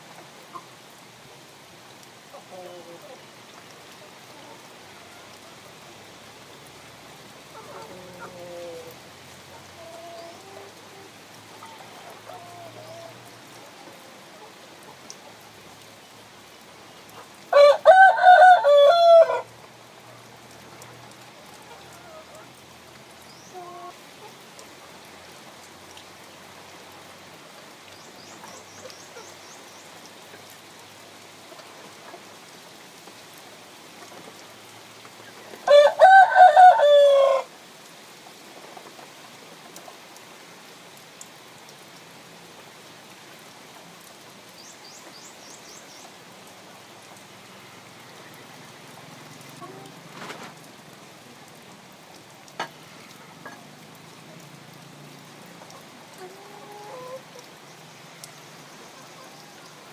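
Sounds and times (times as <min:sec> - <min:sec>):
rooster crowing: 0:17.5 - 0:19.5, 0:35.6 - 0:37.5
steady background hiss: 0:18.6 - 0:59.9.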